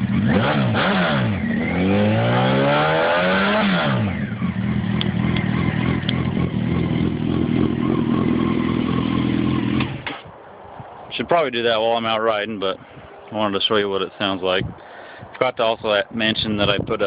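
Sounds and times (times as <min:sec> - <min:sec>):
motorcycle engine revving and idling: 0:00.0 - 0:10.3.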